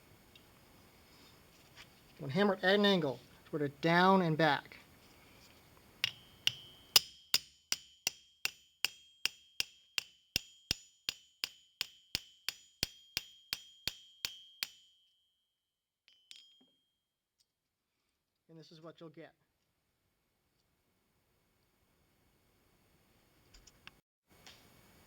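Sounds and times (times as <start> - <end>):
hammer striking chisel on metal: 6.0 - 15.0.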